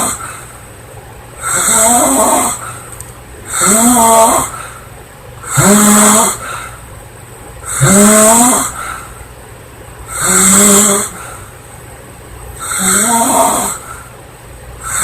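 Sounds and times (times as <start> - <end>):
woman snoring: 1.4 - 2.7, 3.5 - 4.7, 5.5 - 6.7, 7.7 - 8.9, 10.1 - 11.3, 12.6 - 14.0.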